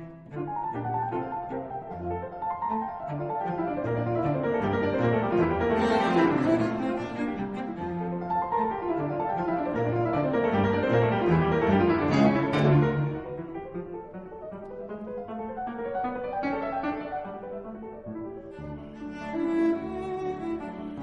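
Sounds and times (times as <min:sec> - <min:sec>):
low bowed strings: 0:00.0 - 0:13.4, 0:18.5 - 0:21.0
piano: 0:00.0 - 0:21.0.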